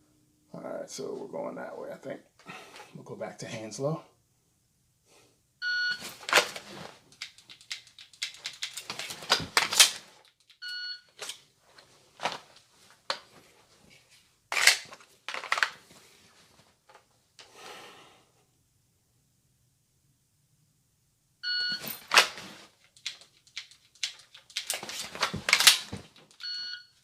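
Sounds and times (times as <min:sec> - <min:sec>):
handling clacks: 0:21.7 - 0:26.6.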